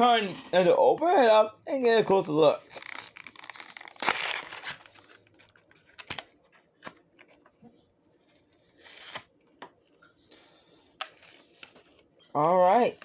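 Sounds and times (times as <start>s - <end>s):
packaging rustling: 2.7s - 7.6s, 11.0s - 12.1s
small clicks and crinkles: 4.6s - 8.8s.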